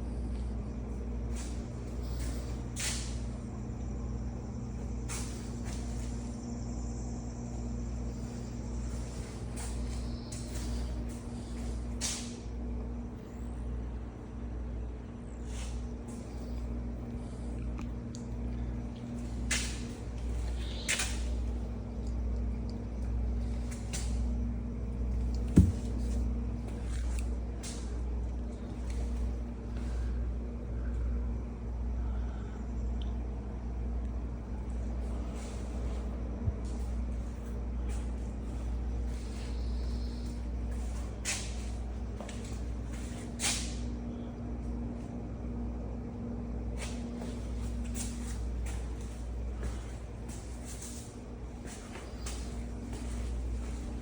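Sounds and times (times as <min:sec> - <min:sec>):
mechanical hum: 0:00.0 - 0:54.0
sharp thump: 0:25.6 - 0:25.9.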